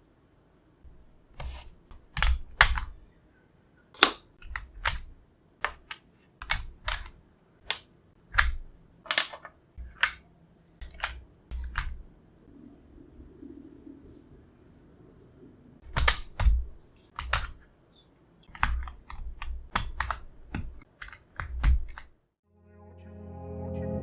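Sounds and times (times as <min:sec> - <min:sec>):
mechanical keyboard key clacks: 0:04.4 - 0:05.1, 0:06.4 - 0:07.2, 0:08.3 - 0:08.7, 0:10.8 - 0:12.0, 0:15.9 - 0:17.6, 0:18.4 - 0:22.1.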